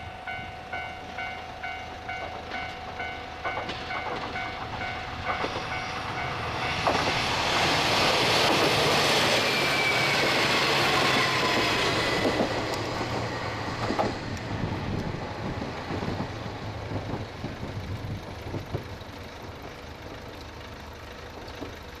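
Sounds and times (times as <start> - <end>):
train wheels on rails: 0.0 - 22.0.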